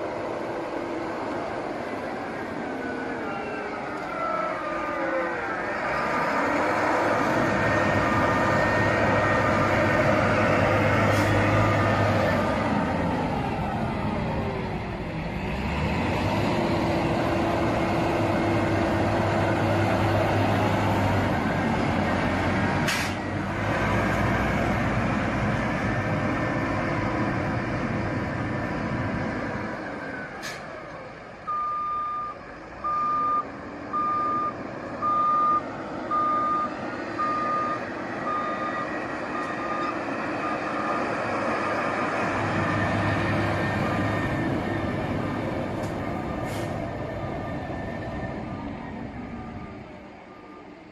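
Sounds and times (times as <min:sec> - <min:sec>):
heavy machinery engines running: 0:00.0 - 0:50.9
reversing alarm beeping: 0:31.5 - 0:40.9.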